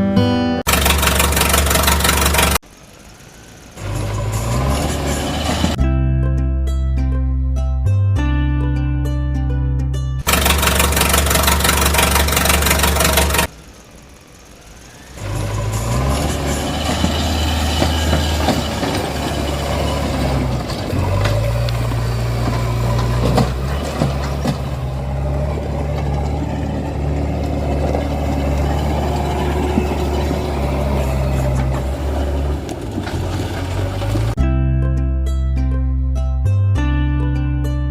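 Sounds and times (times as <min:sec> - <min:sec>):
engine running: 0:00.6 - 0:06.6, 0:10.2 - 0:34.5.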